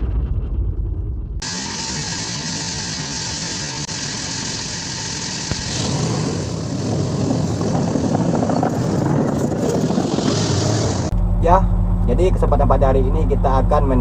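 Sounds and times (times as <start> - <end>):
excavator diesel engine running: 1.4 - 5.9.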